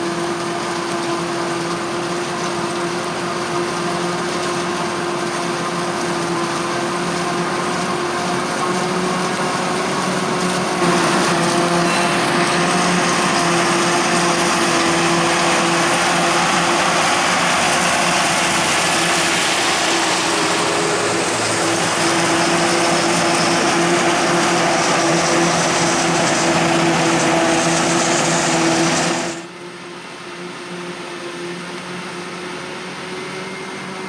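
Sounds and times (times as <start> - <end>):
heavy farm machinery running: 0.0 - 31.2.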